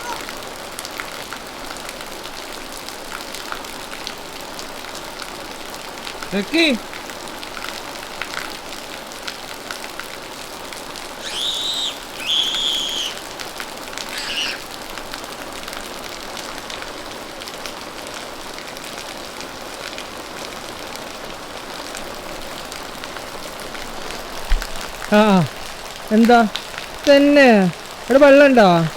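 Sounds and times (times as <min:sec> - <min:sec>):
steady rain with drips: 0:00.0 - 0:28.9
short high-pitched calls: 0:11.2 - 0:13.3, 0:14.1 - 0:14.7.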